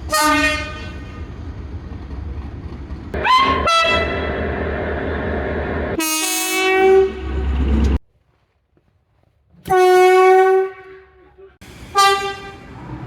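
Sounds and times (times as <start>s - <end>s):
moving train rumble: 0.0s - 8.0s, 11.6s - 13.0s
train horn blast: 0.1s - 1.1s, 3.2s - 4.7s, 6.0s - 8.0s, 9.7s - 13.0s.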